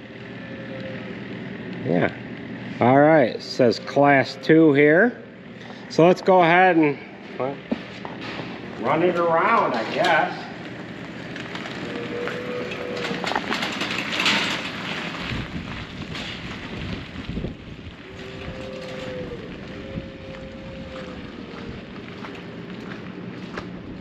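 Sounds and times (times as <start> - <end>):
electric bike motor whine: 0.0 - 24.0
wind on microphone: 15.2 - 22.3.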